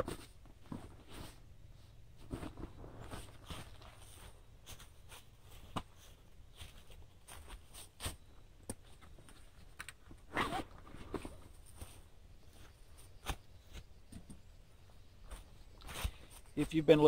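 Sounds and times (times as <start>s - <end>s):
scrape: 0.0s - 6.2s.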